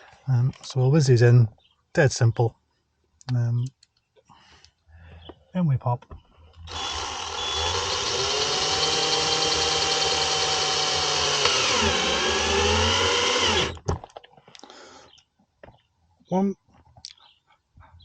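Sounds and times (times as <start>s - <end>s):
power drill running: 6.7s - 13.8s.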